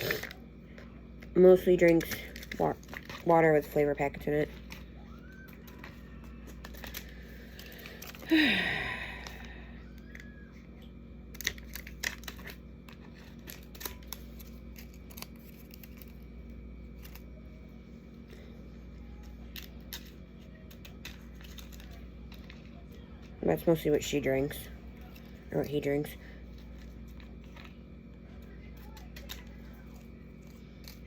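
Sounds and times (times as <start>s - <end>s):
low steady hum: 0.0s - 31.0s
plastic and paper crinkling: 1.8s - 8.4s, 11.3s - 23.4s, 24.8s - 31.0s.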